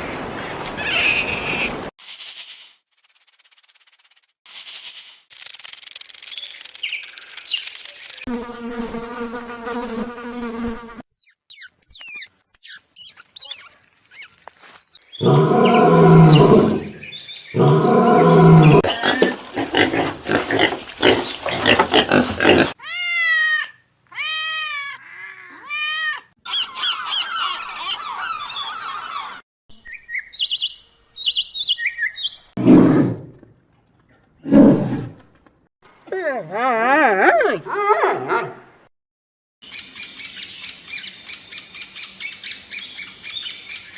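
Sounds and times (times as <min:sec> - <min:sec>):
high chirps: 0:11.0 - 0:15.2
repeated arching animal calls: 0:11.1 - 0:29.4
loud low roaring calls: 0:15.2 - 0:20.0.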